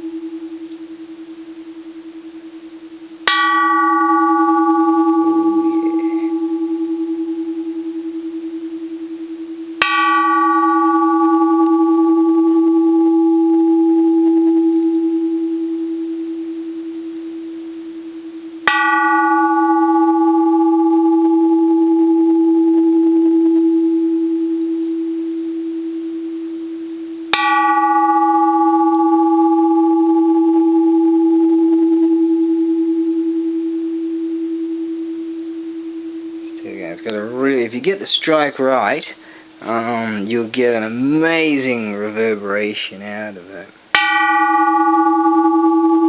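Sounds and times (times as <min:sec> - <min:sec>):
temple bell struck: 0:03.2 - 0:08.7, 0:09.8 - 0:16.0, 0:18.6 - 0:24.5, 0:27.3 - 0:35.0, 0:43.9 - 0:46.0.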